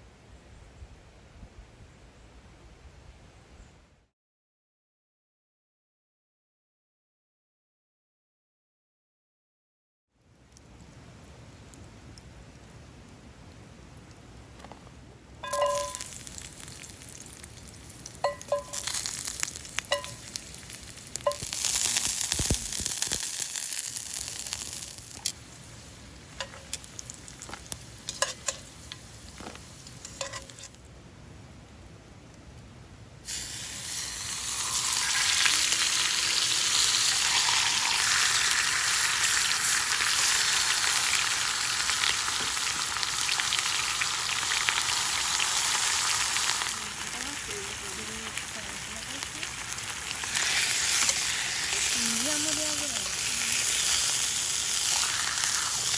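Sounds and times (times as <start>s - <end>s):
metal cookware clinking: 15.4s - 16.1s, 18.2s - 19.1s, 19.9s - 20.4s, 21.3s - 21.6s, 28.1s - 28.7s, 30.0s - 30.7s
food sizzling in hot pan: 15.4s - 30.8s, 33.2s - 55.9s.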